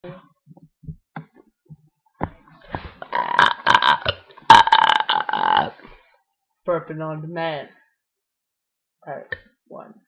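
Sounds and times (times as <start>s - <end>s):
person burping: 3.0s - 5.9s.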